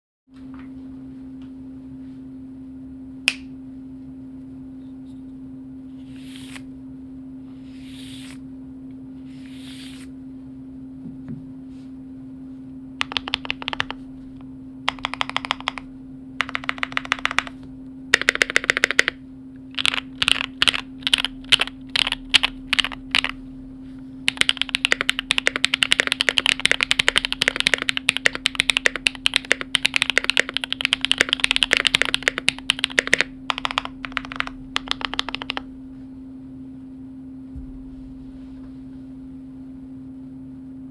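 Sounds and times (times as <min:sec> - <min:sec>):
steady low hum: 0:00.4 - 0:40.9
mechanical keyboard typing: 0:13.0 - 0:14.1, 0:14.9 - 0:23.4, 0:24.3 - 0:35.7.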